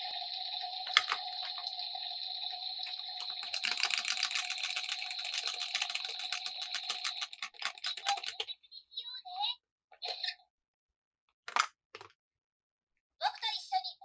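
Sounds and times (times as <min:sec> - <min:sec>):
toy electronic tones over hiss: 0:00.0 - 0:08.4
plastic clicking and rattling: 0:00.8 - 0:01.7, 0:02.9 - 0:08.5, 0:11.5 - 0:12.2.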